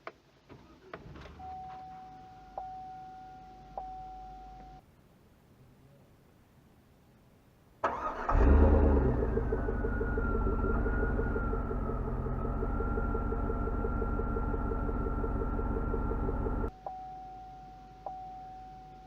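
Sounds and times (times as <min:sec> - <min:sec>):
seat-belt warning chime: 0:01.4 - 0:04.8, 0:16.8 - 0:19.0
car engine idling: 0:07.9 - 0:16.7.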